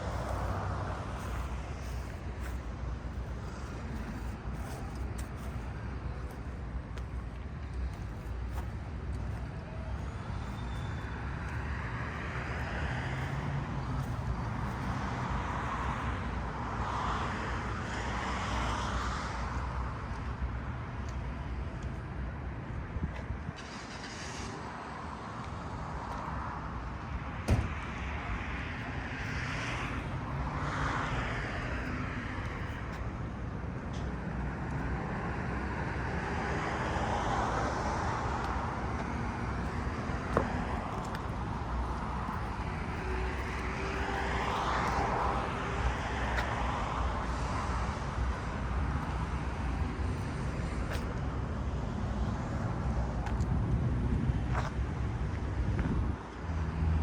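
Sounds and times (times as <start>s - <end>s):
cars passing: 0.0s - 57.0s
low traffic rumble: 0.0s - 57.0s
vehicle passing by: 36.0s - 52.0s.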